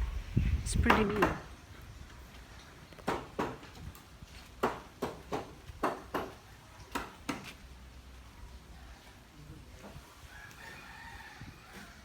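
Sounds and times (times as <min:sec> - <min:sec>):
sharp knocks: 0:00.8 - 0:01.5, 0:03.0 - 0:03.6.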